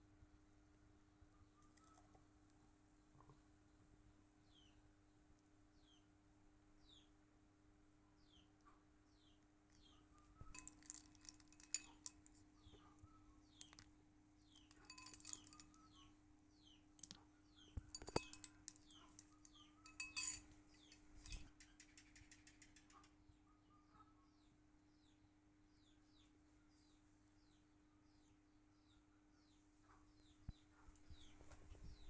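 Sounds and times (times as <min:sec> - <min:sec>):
clinks of glass and metal: 0:10.4 - 0:12.9, 0:14.5 - 0:16.1, 0:17.8 - 0:21.5.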